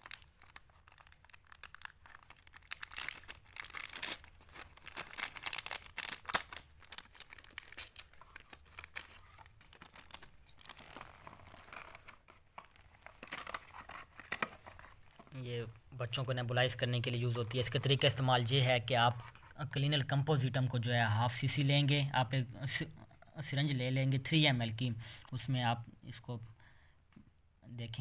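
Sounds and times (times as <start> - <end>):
wrapping crinkling and tearing: 0.0 - 15.4.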